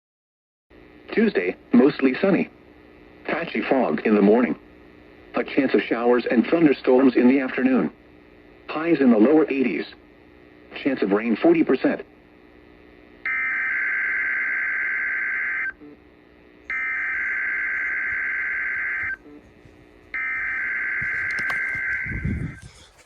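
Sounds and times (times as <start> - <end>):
warbling digital data tones: 16.7 - 19.4.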